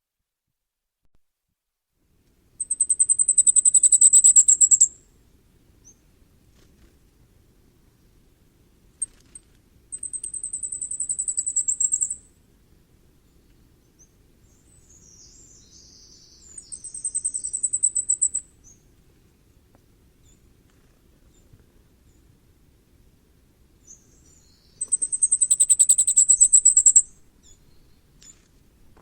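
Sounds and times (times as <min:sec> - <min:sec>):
bird singing high thin notes: 0:14.9 - 0:18.4.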